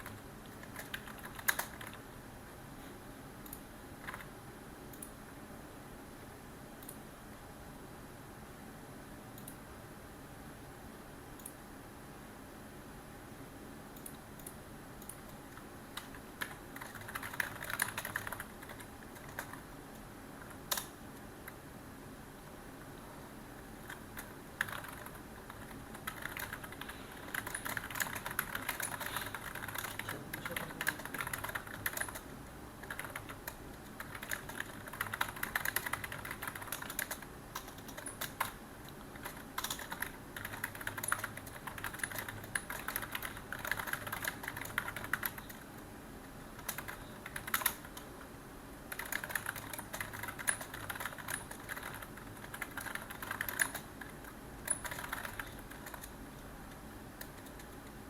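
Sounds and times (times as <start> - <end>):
computer keyboard typing: 0.0 - 2.1, 3.4 - 4.3, 14.0 - 19.7, 20.4 - 21.6, 23.6 - 45.8, 46.5 - 48.3, 48.9 - 56.4, 57.2 - 57.9.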